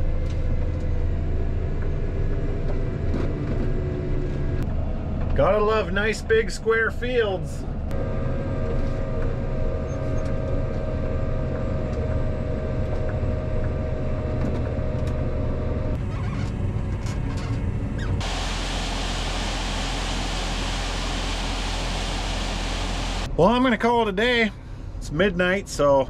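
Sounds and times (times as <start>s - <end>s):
tractor engine drone: 0.0s - 23.5s
steady hiss-like rush: 18.2s - 23.3s
thin steady whine: 18.2s - 23.3s.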